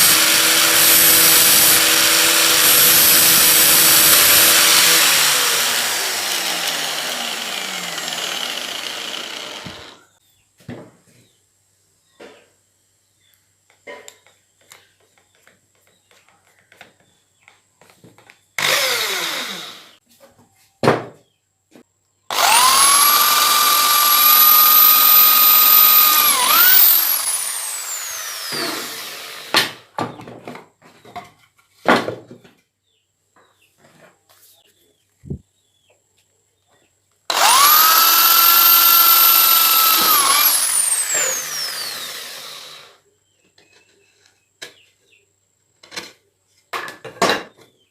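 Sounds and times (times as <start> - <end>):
electric drill whining: 0.0 - 10.1, 18.6 - 20.0, 22.3 - 29.6, 37.3 - 43.0.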